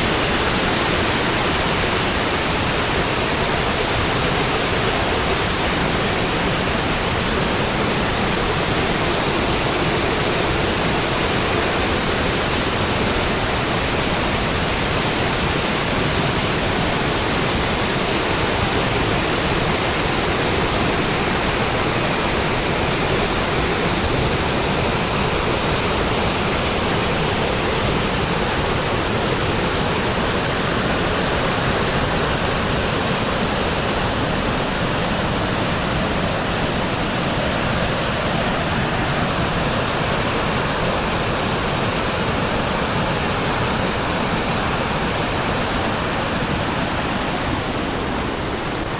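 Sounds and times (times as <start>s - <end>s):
waterfall rushing: 0.0s - 48.9s.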